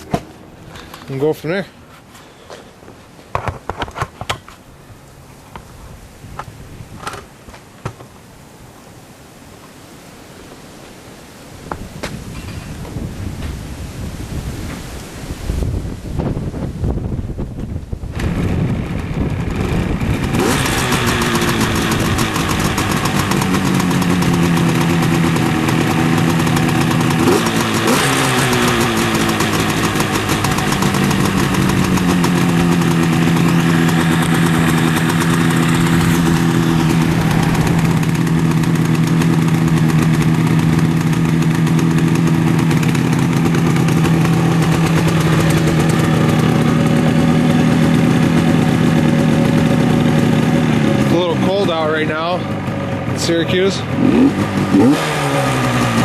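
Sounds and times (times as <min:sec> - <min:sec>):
engine throttle blips: 0:17.5 - 0:56.0
motorcycle engine idling: 0:18.2 - 0:56.0.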